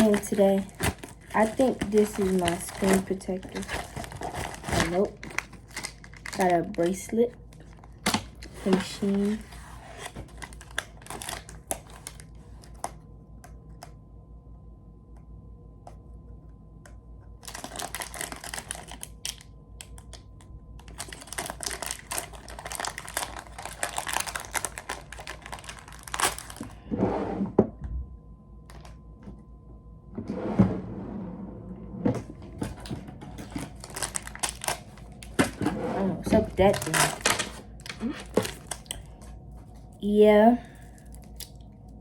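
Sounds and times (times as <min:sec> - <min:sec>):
plastic packaging crinkling: 0:00.0 - 0:12.9, 0:17.4 - 0:26.8, 0:32.3 - 0:40.0, 0:40.6 - 0:41.8.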